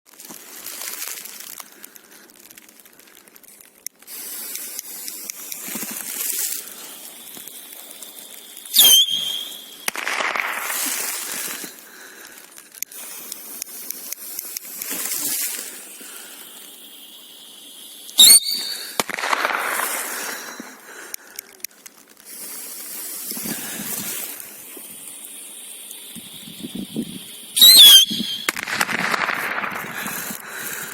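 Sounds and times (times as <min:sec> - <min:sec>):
faint whistling and hiss: 0:04.1 - 0:30.9
shrill rocket whistles: 0:07.2 - 0:11.7, 0:15.0 - 0:20.8, 0:25.6 - 0:30.9.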